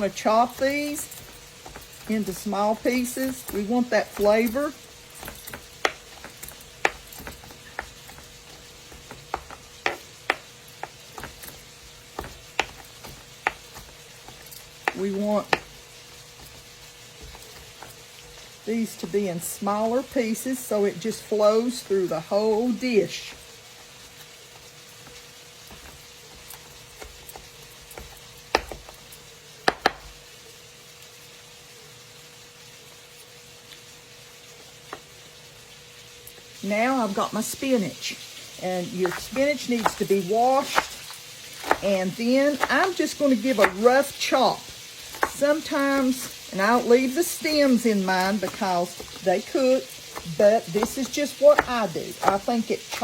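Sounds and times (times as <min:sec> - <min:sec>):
chicken frying in a pan: 0:00.0 - 0:53.0
knife chopping on cutting board: 0:00.1 - 0:15.8, 0:16.4 - 0:18.4, 0:25.0 - 0:29.0, 0:29.6 - 0:30.2, 0:39.0 - 0:53.0.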